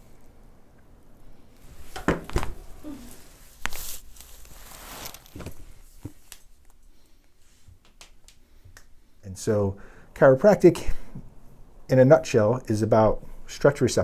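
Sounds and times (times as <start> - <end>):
chiropractic adjustment thumps: 1.8 - 2.9.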